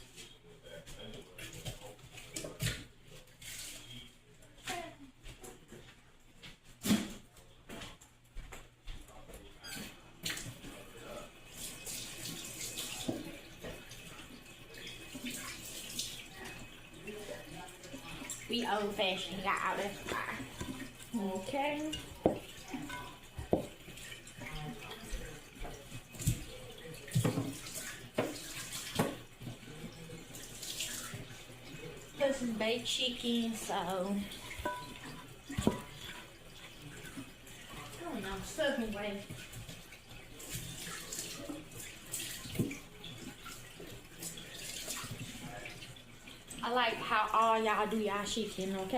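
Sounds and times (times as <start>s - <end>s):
tap water splashing into sink: 1.2s - 2.9s, 10.2s - 10.8s, 11.6s - 48.9s
tap running into sink: 21.8s - 31.4s, 34.3s - 37.6s, 39.2s - 43.6s.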